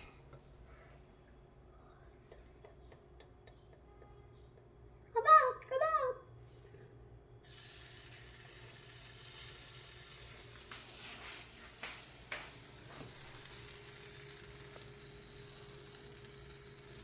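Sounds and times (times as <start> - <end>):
batter sizzling in a pan: 7.4 - 17.0.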